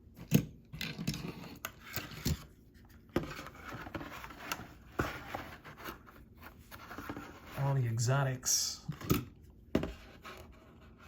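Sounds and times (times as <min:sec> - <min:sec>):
plastic rustling and scraping: 0:00.8 - 0:07.8.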